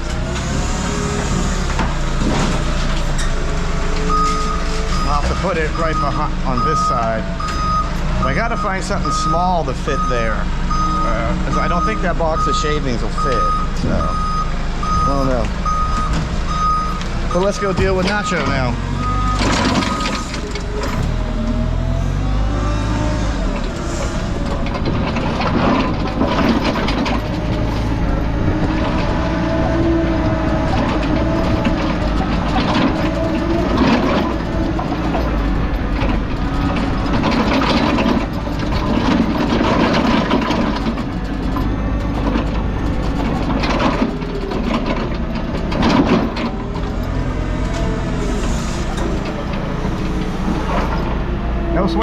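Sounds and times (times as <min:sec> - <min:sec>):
diesel engine working: 0:00.0 - 0:52.0
metal clanks and knocks: 0:01.7 - 0:09.5, 0:15.1 - 0:21.7, 0:23.4 - 0:51.2.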